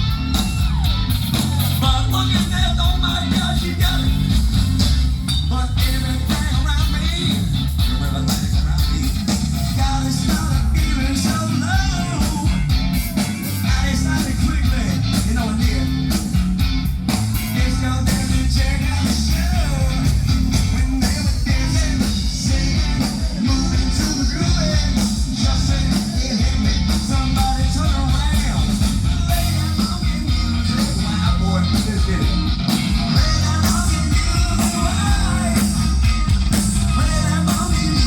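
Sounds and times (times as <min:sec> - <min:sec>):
bass guitar: 0:00.0 - 0:38.0
drums: 0:00.0 - 0:38.0
electric guitar: 0:00.0 - 0:38.0
person singing: 0:05.5 - 0:16.3, 0:17.5 - 0:38.0.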